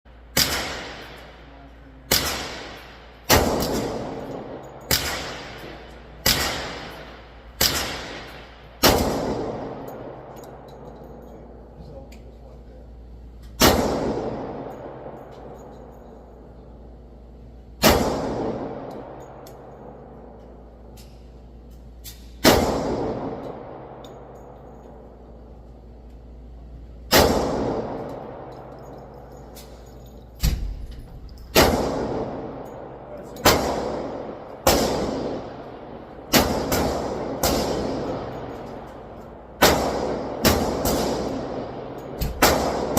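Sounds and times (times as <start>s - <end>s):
pistol shots echoing: 0.2s - 1.5s, 2.1s - 11.6s, 13.6s - 16.5s, 17.8s - 20.8s, 22.1s - 25.4s, 27.0s - 30.8s, 31.5s - 42.9s.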